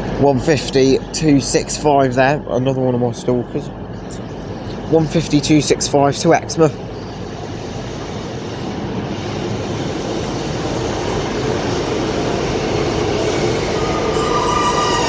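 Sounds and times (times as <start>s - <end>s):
diesel train running: 0.0s - 15.0s
wheels squealing on rails: 12.1s - 15.0s.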